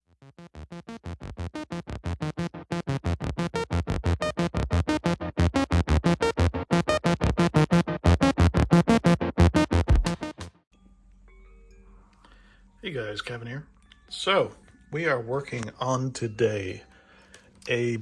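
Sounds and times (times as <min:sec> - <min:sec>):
fast synthesizer notes: 0:00.2 - 0:10.5.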